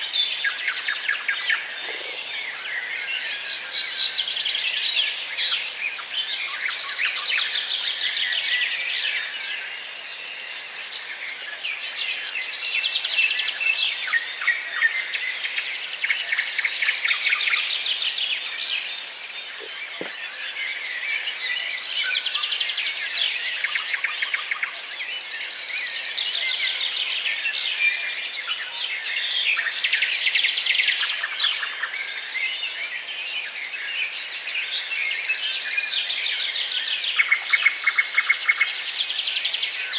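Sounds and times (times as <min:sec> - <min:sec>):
small birds chirping: 0:00.5 - 0:03.3.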